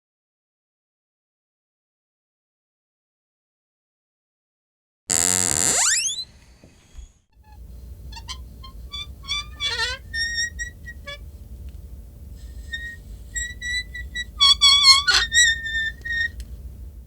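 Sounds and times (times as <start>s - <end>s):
door hinge squeaking: 5.1s - 6.3s, 8.1s - 11.2s, 12.7s - 16.4s
low steady hum: 5.1s - 17.0s.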